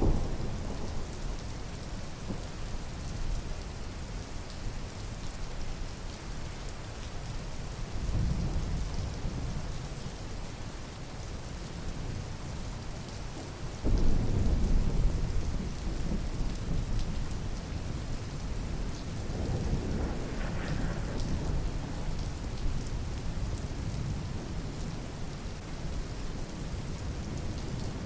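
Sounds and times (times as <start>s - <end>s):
thunder rumbling: 0.0s - 2.4s, 18.6s - 24.4s
steady rain falling: 0.0s - 28.0s.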